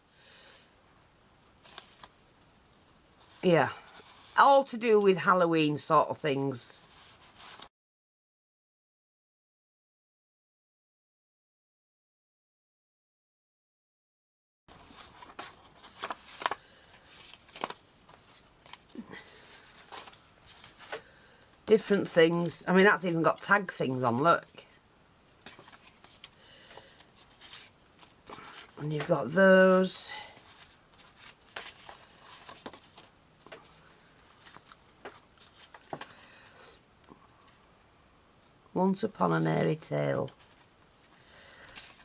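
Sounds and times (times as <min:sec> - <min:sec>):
paper rustling and tapping: 0:14.7 - 0:21.1, 0:25.4 - 0:29.1, 0:30.4 - 0:36.2.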